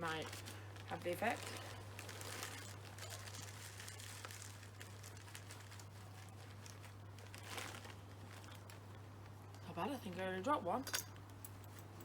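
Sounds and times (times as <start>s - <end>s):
bag crinkling: 0.0s - 9.0s
peanuts poured into bird feeder: 2.1s - 5.8s.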